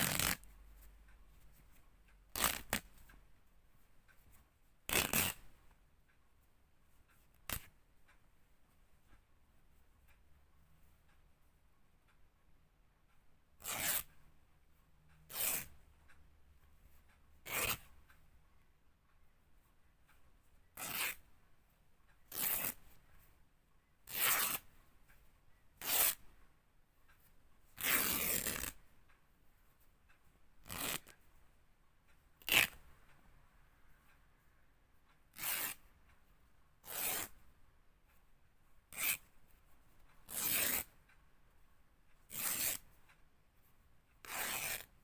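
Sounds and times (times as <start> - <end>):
fabric ripping: 0.0 - 0.4, 2.4 - 2.8, 4.9 - 5.4, 30.6 - 31.1.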